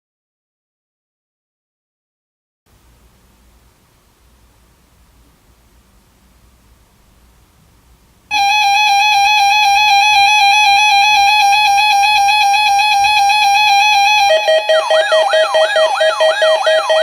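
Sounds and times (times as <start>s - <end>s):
faint hiss: 2.7s - 9.9s
buzzy electronic tone: 8.3s - 17.0s.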